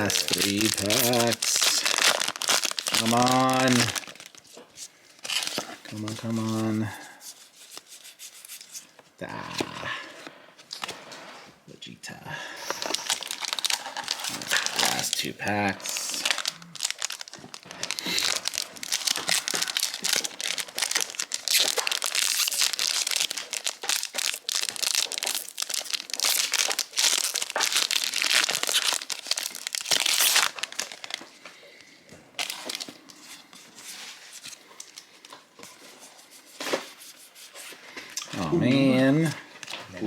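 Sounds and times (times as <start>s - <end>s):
cards shuffling: 0.0s - 4.6s
foil packs tearing and crinkling: 0.0s - 4.6s, 5.2s - 6.7s, 12.6s - 31.3s.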